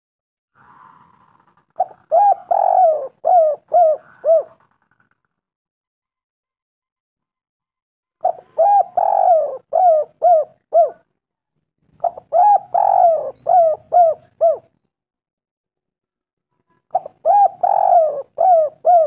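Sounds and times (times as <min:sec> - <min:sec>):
dove cooing: 0:00.6 - 0:05.2, 0:08.2 - 0:11.1, 0:12.0 - 0:14.8, 0:16.9 - 0:19.0.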